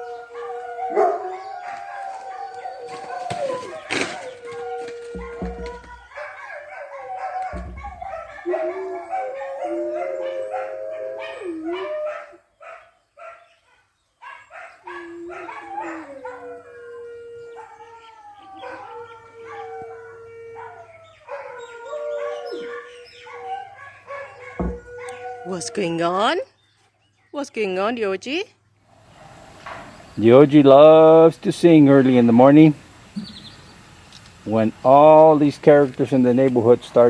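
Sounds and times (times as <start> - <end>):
dogs howling together: 0.0 - 13.5, 14.2 - 26.4.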